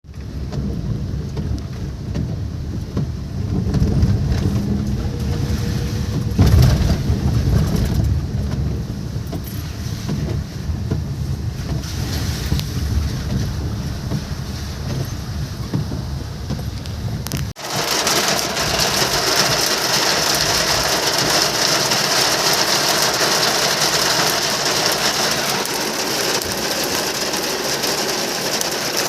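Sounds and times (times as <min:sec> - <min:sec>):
heavy rain pouring: 0:00.0 - 0:29.0
wind buffeting microphone: 0:00.2 - 0:17.6.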